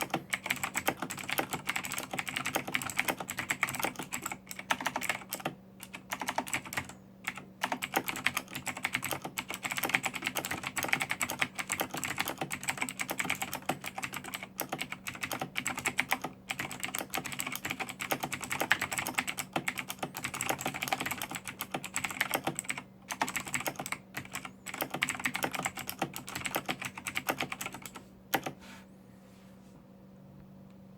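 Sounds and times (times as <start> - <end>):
mechanical keyboard typing clicks: 0.0 - 28.6.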